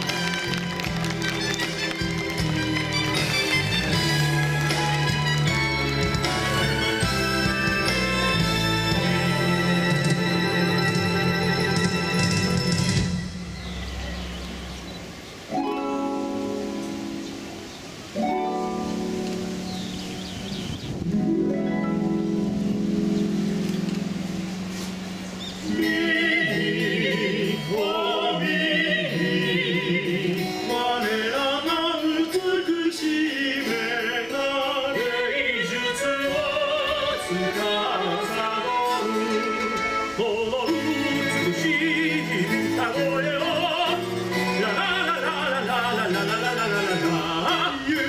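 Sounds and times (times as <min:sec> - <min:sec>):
operatic singing: 0:00.0 - 0:13.4, 0:25.6 - 0:48.0
orchestral accompaniment: 0:00.0 - 0:31.3, 0:32.1 - 0:48.0.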